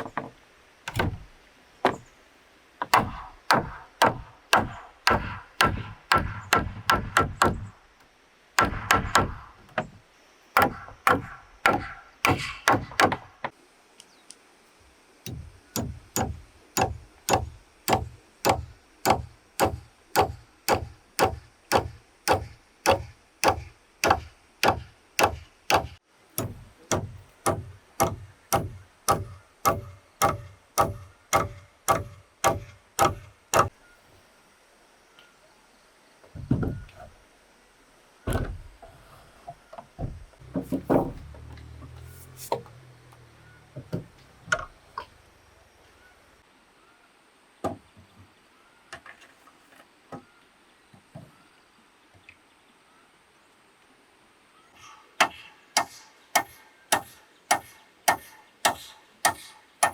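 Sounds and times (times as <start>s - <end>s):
tool knocking on bamboo: 0.9s - 1.2s, 2.8s - 7.7s, 8.6s - 10.0s, 10.6s - 13.3s, 15.3s - 33.7s, 55.2s - 59.9s.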